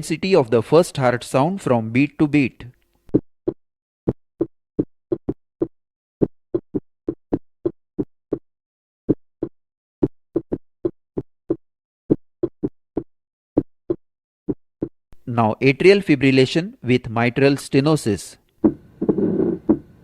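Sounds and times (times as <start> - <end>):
heartbeat: 3.1 - 8.5, 9.1 - 15.0, 18.6 - 19.9.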